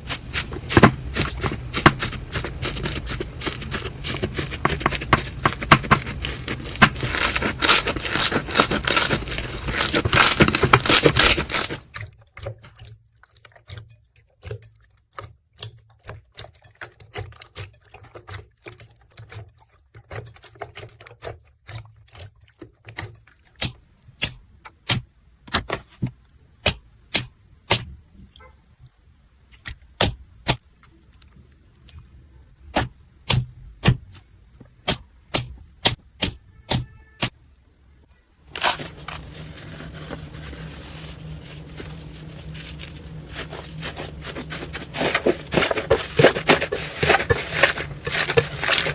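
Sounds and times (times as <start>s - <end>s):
slime crackling: 0.0s - 11.8s, 38.5s - 48.9s.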